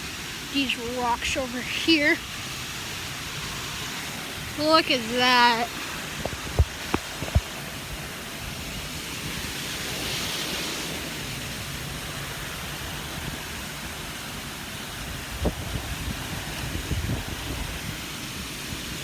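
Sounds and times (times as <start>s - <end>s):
waterfall rushing: 0.0s - 19.0s.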